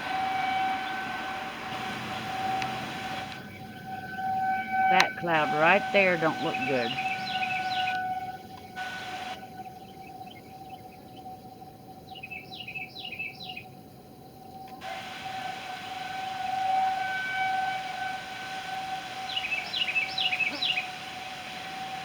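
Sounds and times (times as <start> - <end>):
warning siren steady tone: 0.0 - 22.0
bird chirping: 1.7 - 8.8, 19.2 - 21.0.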